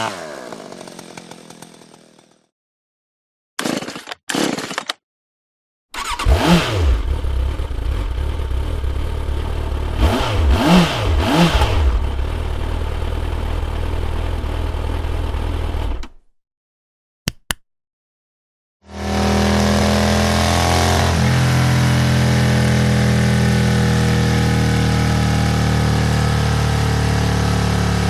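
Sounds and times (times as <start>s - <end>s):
motorcycle engine revving and idling: 0.0s - 2.4s, 6.0s - 16.1s, 18.9s - 28.0s.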